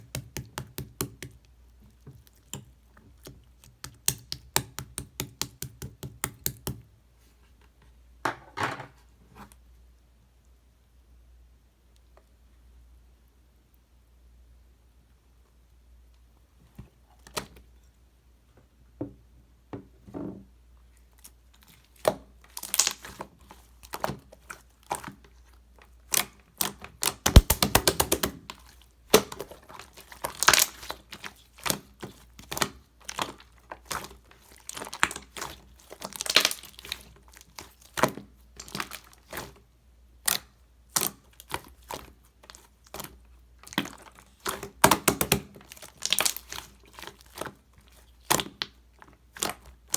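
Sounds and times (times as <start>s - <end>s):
slime squelching wet pops: 2.2s - 6.8s, 26.1s - 39.5s, 42.9s - 47.5s, 48.2s - 49.9s.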